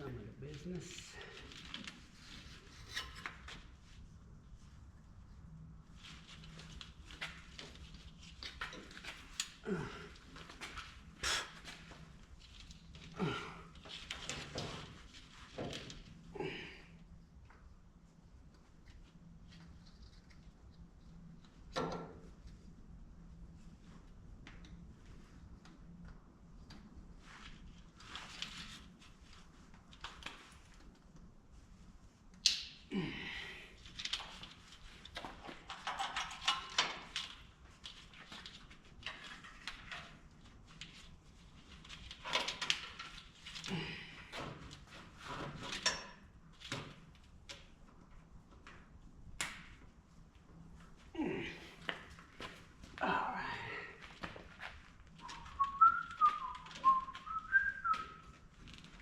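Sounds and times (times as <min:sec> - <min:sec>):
tools clicking and knocking: 0:35.7 - 0:37.3.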